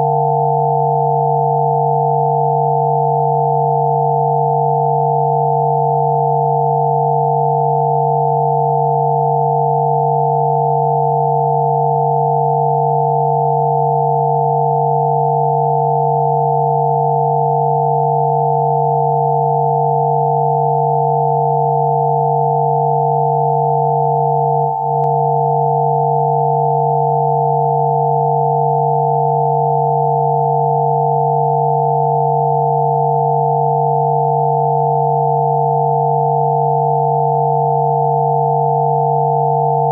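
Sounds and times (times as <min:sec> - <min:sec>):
high pure sine tones: 0:00.0 - 0:39.9
low electronic hum: 0:14.7 - 0:39.9.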